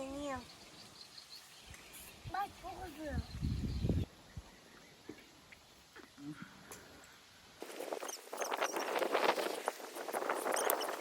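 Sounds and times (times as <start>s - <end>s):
high chirps of small animals: 10.3s - 11.0s.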